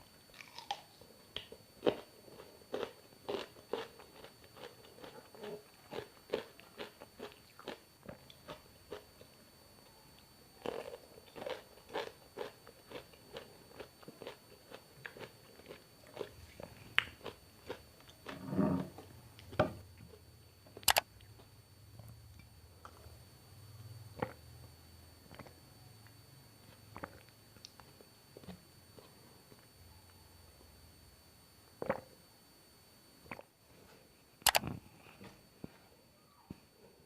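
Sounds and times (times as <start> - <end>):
crunchy chewing and biting: 0.2 - 9.3, 10.6 - 19.6, 26.7 - 29.2
sharp click: 20.8 - 21.0, 34.4 - 34.7.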